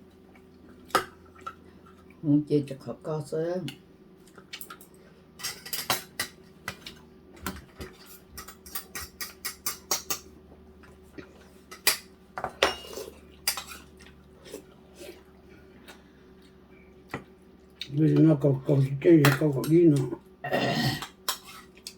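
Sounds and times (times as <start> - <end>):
utensils clinking on plates: 4.6 - 6.4, 7.5 - 10.3, 11.7 - 14.0.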